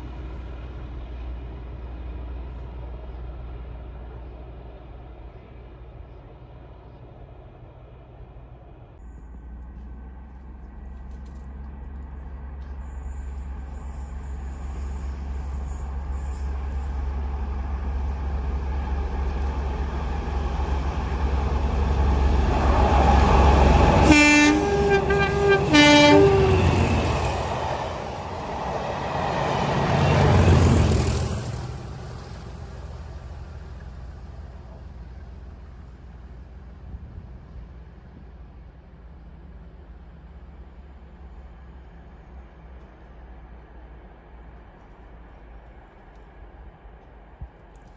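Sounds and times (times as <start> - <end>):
diesel locomotive engines passing: 0.0 - 47.9
two-tone train horn: 23.7 - 27.5.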